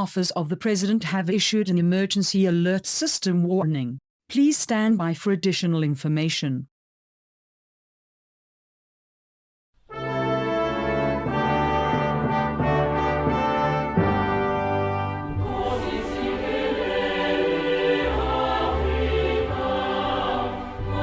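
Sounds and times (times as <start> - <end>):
brass sustained chords: 9.9 - 21.0
choir singing: 10.5 - 21.0.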